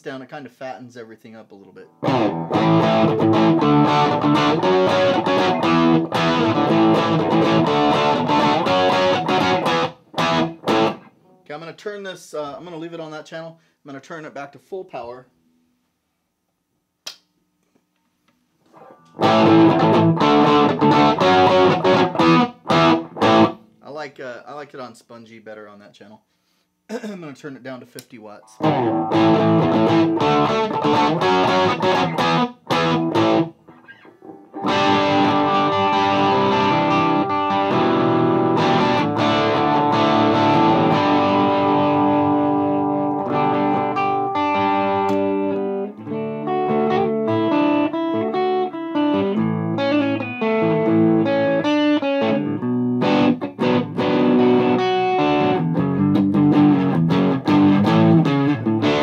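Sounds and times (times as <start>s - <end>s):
electric guitar chords: 1.9s - 11.4s, 18.7s - 23.8s, 28.5s - 59.0s
electric guitar picked notes: 1.9s - 11.5s, 18.7s - 23.7s, 28.4s - 59.0s.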